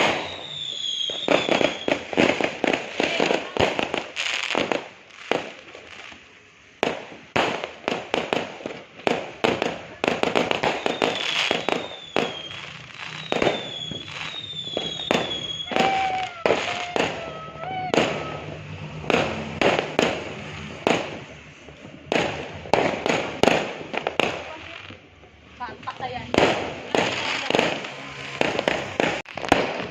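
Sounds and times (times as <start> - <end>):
falling whistling tones: 0.0 - 2.2, 10.6 - 19.1
fireworks banging: 0.0 - 29.9.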